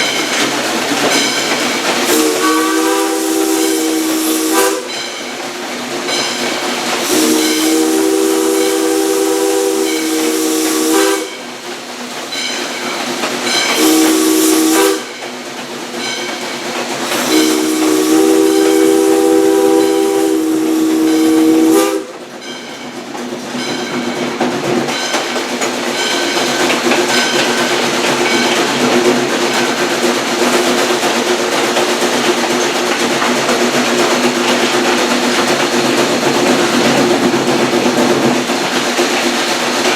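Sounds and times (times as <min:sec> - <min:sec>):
steady steam hiss: 0:00.0 - 0:39.9
steam whistle chord blasts: 0:02.1 - 0:05.0, 0:07.0 - 0:11.4, 0:13.7 - 0:15.2, 0:17.2 - 0:22.1.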